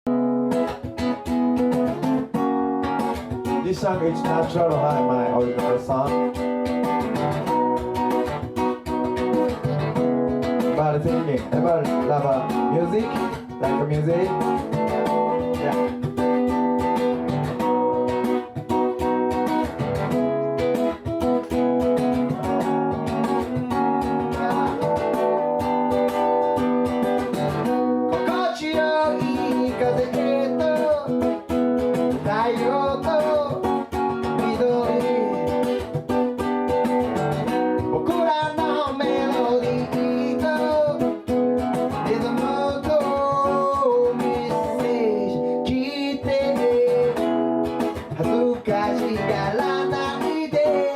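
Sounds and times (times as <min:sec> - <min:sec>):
acoustic guitar strumming: 0:00.1 - 0:50.9
person singing: 0:03.5 - 0:06.4, 0:10.6 - 0:16.9, 0:23.3 - 0:26.2, 0:28.1 - 0:36.2, 0:37.8 - 0:50.9.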